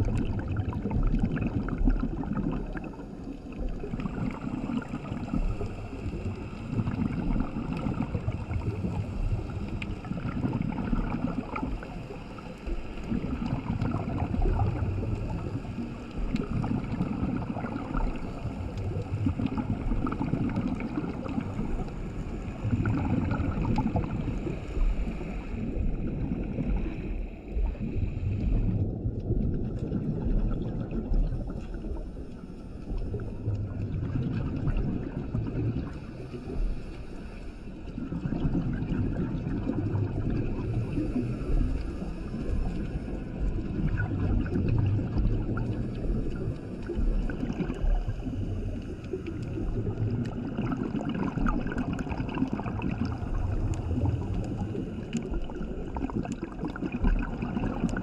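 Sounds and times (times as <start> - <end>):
bubbles gurgling underwater: 0.0 - 58.0
scuba regulator breathing: 17.9 - 28.8, 35.8 - 38.0, 40.5 - 43.6, 52.4 - 56.5.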